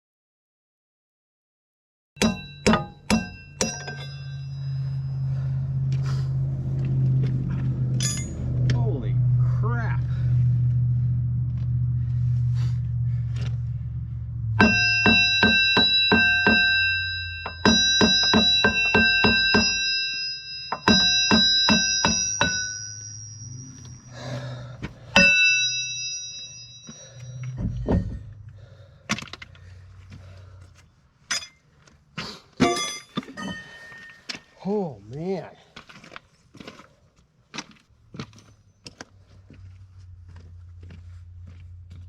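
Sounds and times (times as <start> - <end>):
hammer ringing on steel: 2.2 - 5.7, 8.0 - 8.6, 14.6 - 24.5, 25.2 - 28.4, 32.6 - 34.3
low engine hum: 4.0 - 18.0, 26.4 - 31.1, 38.0 - 42.0.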